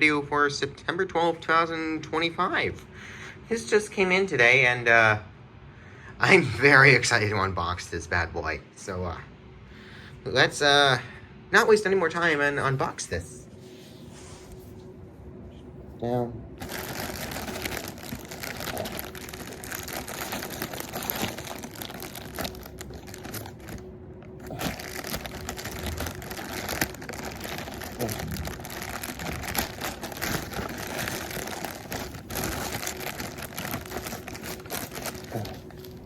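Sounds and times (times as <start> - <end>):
packaging crinkling and rustling: 16.6 - 36.0.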